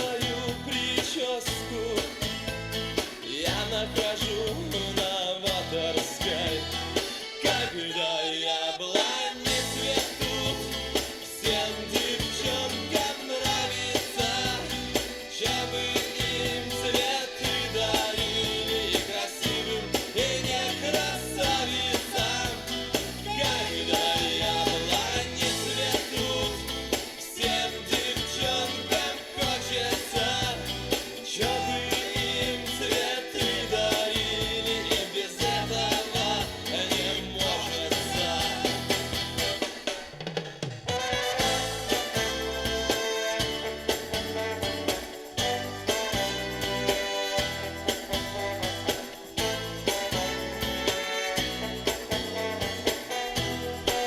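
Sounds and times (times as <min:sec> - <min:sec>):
pop song over loudspeakers: 0:00.0 - 0:54.0.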